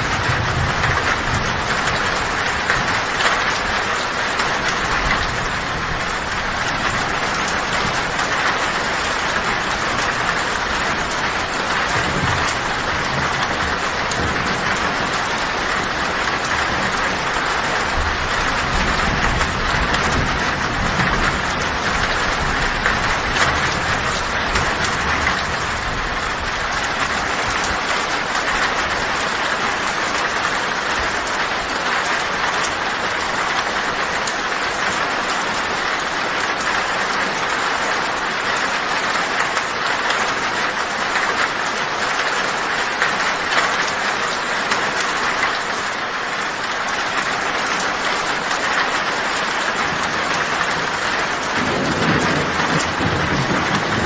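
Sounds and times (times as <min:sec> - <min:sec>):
low thunder rumble: 0:00.0 - 0:03.6, 0:04.4 - 0:27.9, 0:49.9 - 0:54.0
heavy rain on a tin roof: 0:00.0 - 0:54.0.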